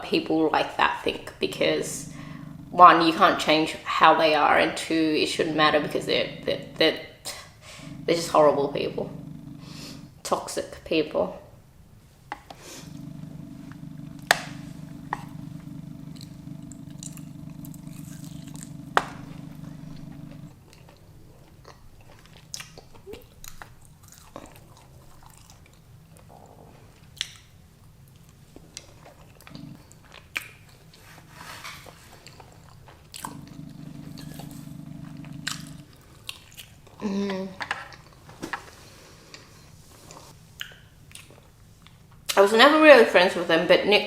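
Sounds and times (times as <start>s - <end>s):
low hum: 1.5s - 3.6s, 5.7s - 6.9s, 7.6s - 10.2s, 12.8s - 20.6s, 33.3s - 36.0s
chewing and biting food: 21.6s - 25.8s, 33.1s - 36.7s.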